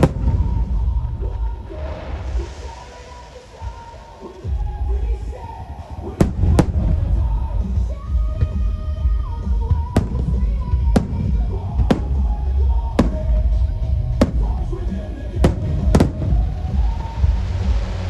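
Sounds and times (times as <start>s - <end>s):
firework shells bursting: 0.0s - 0.8s, 6.2s - 7.6s, 10.0s - 17.1s
continuous low rumble: 0.0s - 18.0s.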